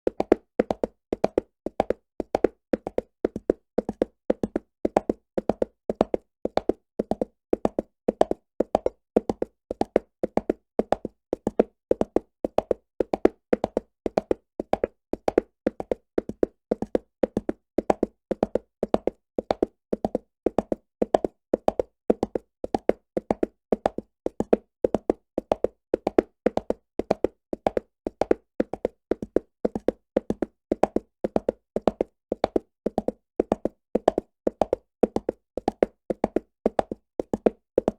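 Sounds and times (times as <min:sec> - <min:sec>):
horse galloping on stone: 0:00.1 - 0:37.9.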